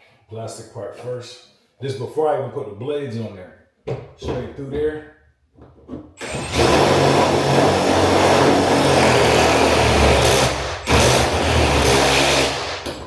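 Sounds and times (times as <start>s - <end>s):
power drill cutting drywall: 6.2s - 13.0s.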